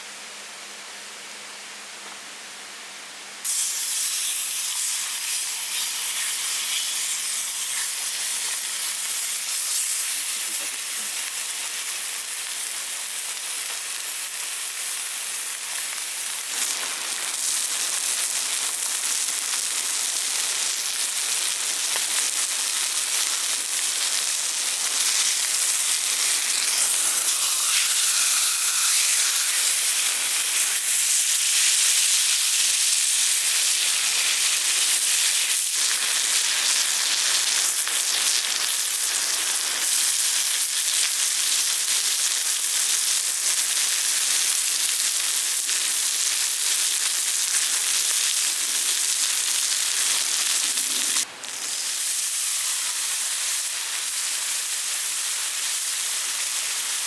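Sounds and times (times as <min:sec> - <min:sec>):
food sizzling in a pan: 0:03.4 - 0:57.0.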